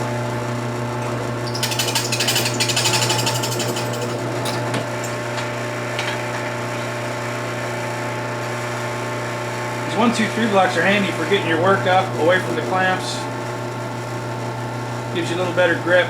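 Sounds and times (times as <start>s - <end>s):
drill press bit rattling: 1.4s - 5.2s.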